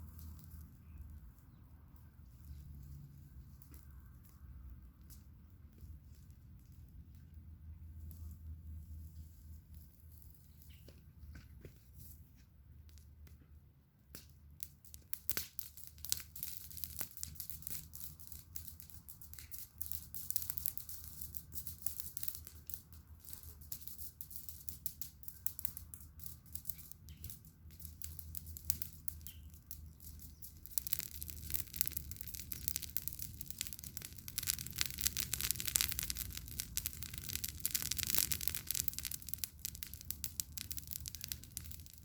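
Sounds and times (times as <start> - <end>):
campfire crackling: 14.1 - 42.0.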